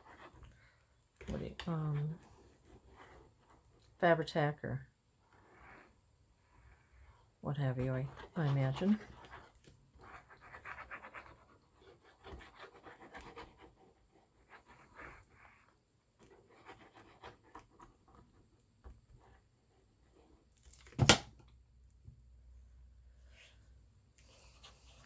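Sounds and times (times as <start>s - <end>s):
sharp knock: 21.0s - 21.3s.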